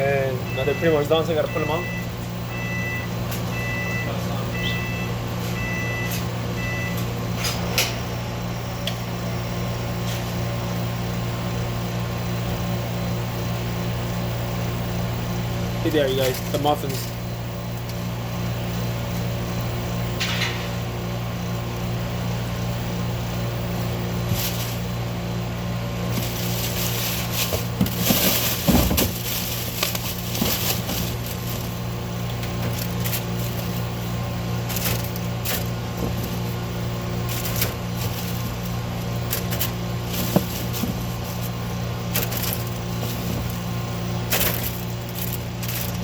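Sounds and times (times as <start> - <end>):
kitchen equipment humming: 0.0 - 46.0
trays and food being handled: 26.0 - 34.0, 34.6 - 46.0.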